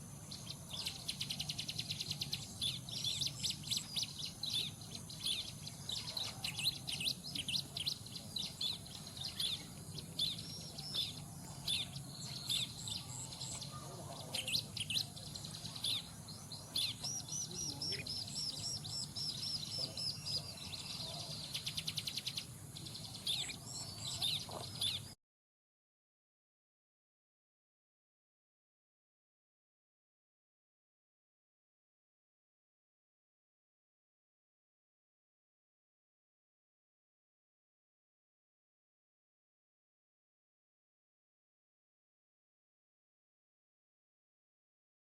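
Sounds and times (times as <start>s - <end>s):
bird chirping: 0.2s - 25.2s.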